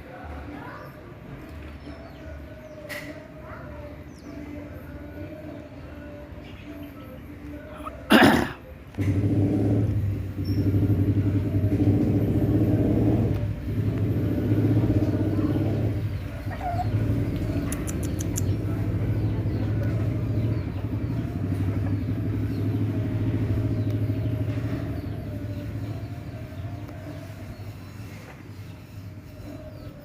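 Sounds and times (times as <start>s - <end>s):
vehicle engine running: 8.9s - 30.0s
quick high clicks: 17.6s - 18.6s.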